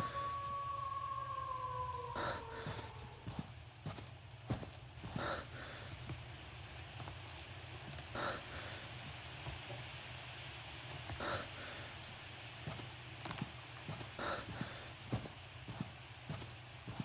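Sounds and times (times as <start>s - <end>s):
heavy scuffing: 12.6s - 17.0s.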